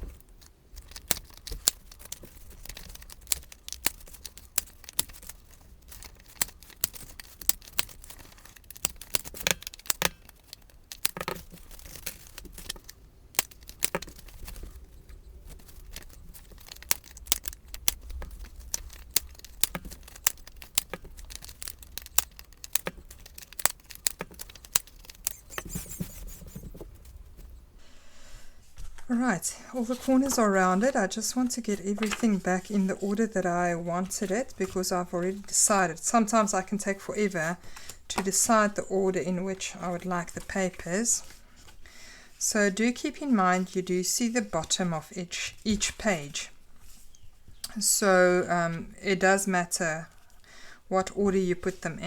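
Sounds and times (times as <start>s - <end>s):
corner punch clicking: 0.0s - 26.7s
paper being shuffled: 0.0s - 27.6s, 29.8s - 35.6s.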